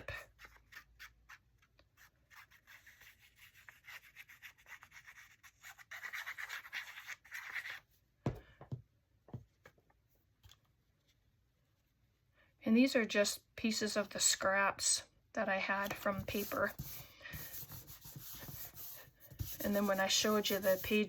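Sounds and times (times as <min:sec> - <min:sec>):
cardstock scraping on paper: 0:15.8 - 0:21.0.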